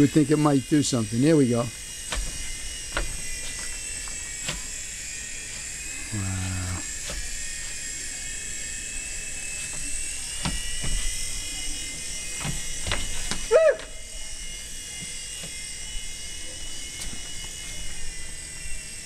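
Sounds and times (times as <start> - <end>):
toy helicopter motors whining: 0.0 - 19.0
person exclaiming: 13.5 - 13.9.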